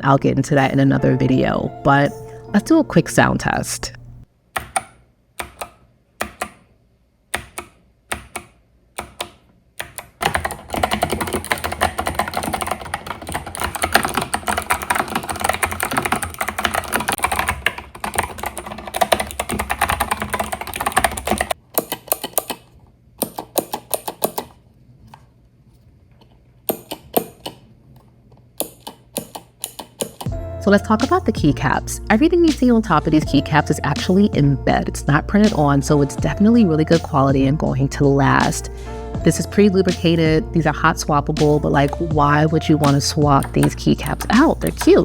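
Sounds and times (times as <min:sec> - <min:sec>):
mechanical keyboard typing: 0:07.3 - 0:24.6, 0:28.6 - 0:30.3, 0:42.7 - 0:45.0.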